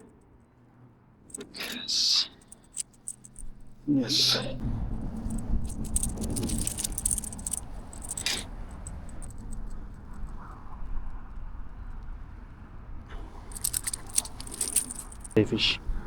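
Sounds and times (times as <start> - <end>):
fast clicking and rattling: 2.4 - 3.6, 5.1 - 10.2, 13.5 - 15.4.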